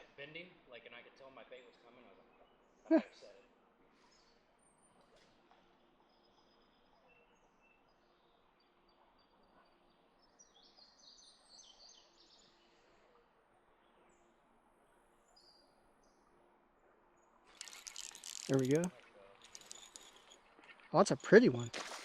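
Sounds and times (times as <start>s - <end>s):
faint outdoor ambience: 0.0s - 22.0s
small birds chirping: 17.2s - 22.0s.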